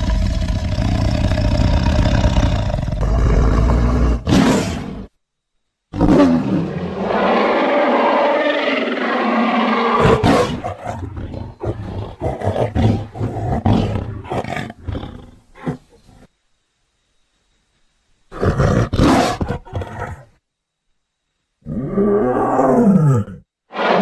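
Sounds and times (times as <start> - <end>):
tiger roaring: 0.0 - 5.1, 5.9 - 15.9, 21.6 - 24.0.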